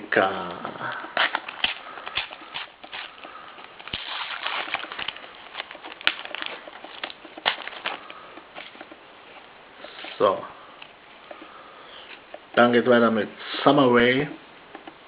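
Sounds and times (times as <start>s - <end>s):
paper stickers shuffled: 0.4s - 10.5s
foil packet crinkling and tearing: 0.8s - 9.0s.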